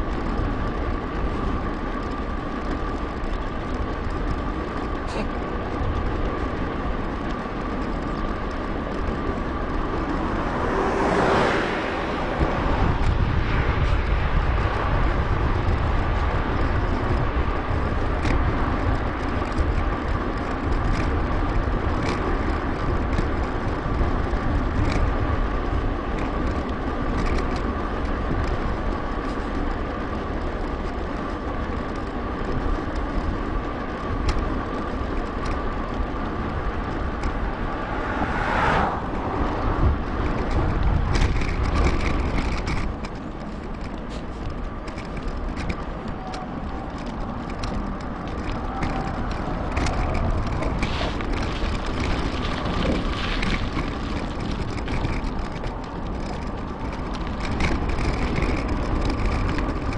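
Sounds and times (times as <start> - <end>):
bike tyre rumble: 0.0 - 59.9
short clicks from bumps: 0.0 - 59.9
wind rushing over microphone: 8.8 - 26.2, 34.0 - 59.9
steady thin whine: 35.9 - 42.6.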